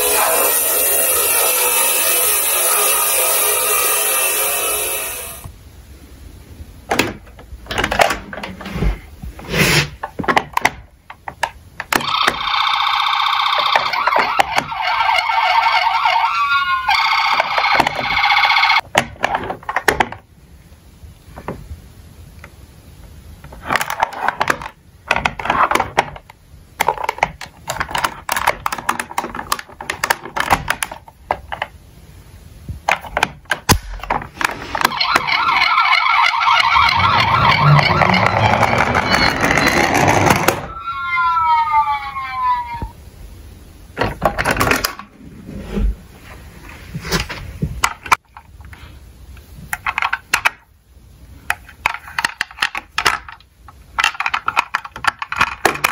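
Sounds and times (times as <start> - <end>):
toy electronic sirens: 12.0 - 18.8, 34.8 - 43.0.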